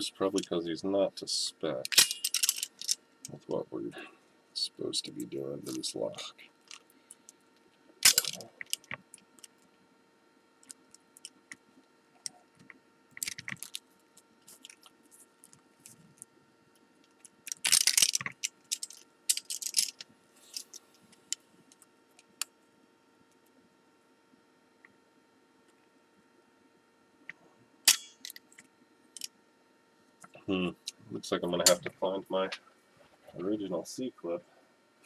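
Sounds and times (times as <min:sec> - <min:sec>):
small metal clicks and clatter: 0:01.8 - 0:03.4, 0:08.0 - 0:09.6, 0:12.6 - 0:13.8, 0:17.0 - 0:22.5.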